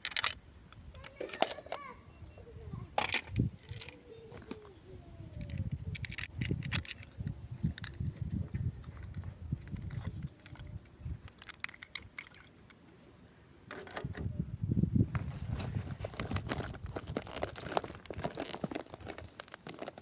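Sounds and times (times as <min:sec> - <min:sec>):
plastic toy pieces clicking: 0:00.0 - 0:01.8, 0:03.0 - 0:04.0, 0:05.3 - 0:07.2, 0:08.8 - 0:12.8.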